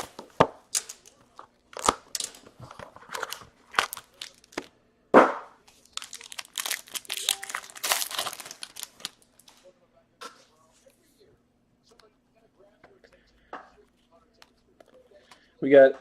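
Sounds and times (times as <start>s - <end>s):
packaging crinkling and tearing: 0.0s - 4.7s, 5.7s - 9.6s.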